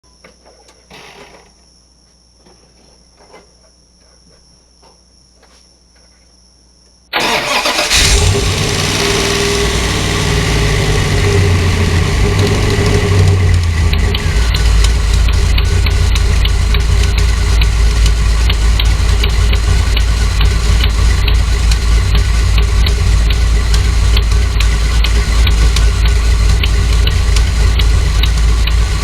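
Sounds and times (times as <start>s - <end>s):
car engine starting and idling: 7.2s - 29.0s.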